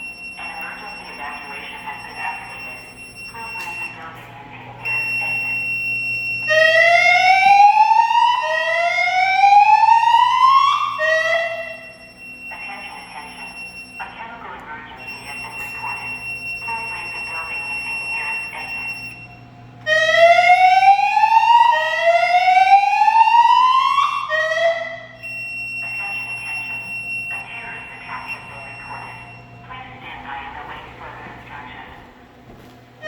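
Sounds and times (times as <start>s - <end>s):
recorded voice announcement: 0.0s - 32.4s
steady high tone: 19.9s - 29.4s.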